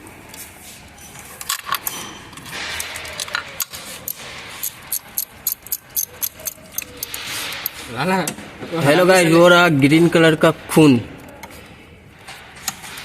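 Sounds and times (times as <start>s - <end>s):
metal tools clinking and rattling: 0.9s - 8.0s.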